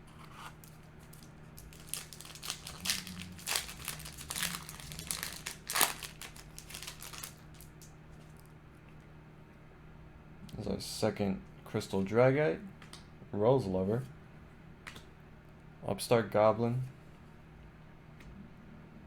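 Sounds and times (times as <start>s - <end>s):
wrapper crinkling and tearing: 0.6s - 7.9s.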